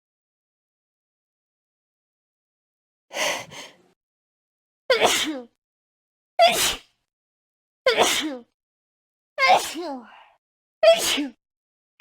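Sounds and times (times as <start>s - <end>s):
person sneezing: 4.9s - 5.5s, 6.4s - 6.8s, 7.9s - 8.4s, 9.4s - 9.9s, 10.8s - 11.4s.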